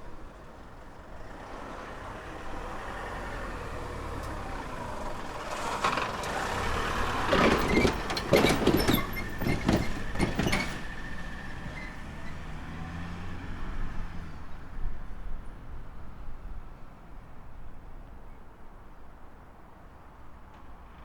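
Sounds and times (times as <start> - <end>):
train rumble: 0.0 - 13.0
train wheels clacking over rail joints: 5.3 - 12.2.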